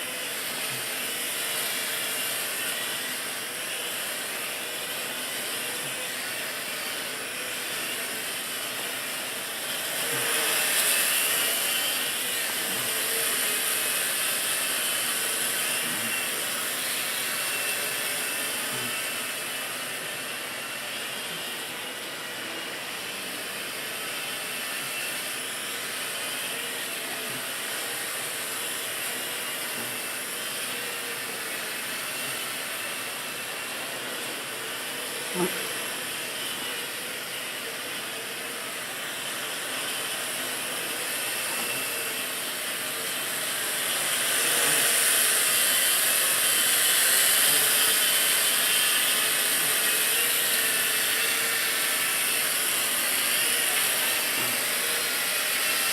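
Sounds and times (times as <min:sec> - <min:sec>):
quadcopter motors buzzing: 0:00.0 - 0:55.9.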